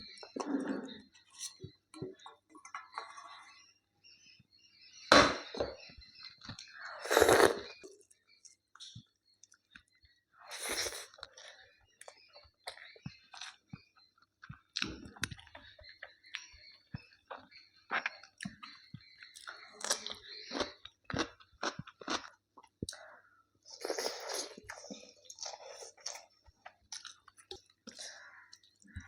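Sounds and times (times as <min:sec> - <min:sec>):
person chewing and crunching food: 0:06.4 - 0:09.8, 0:10.5 - 0:23.1, 0:23.7 - 0:29.0
wet mouth clicks: 0:07.1 - 0:07.7.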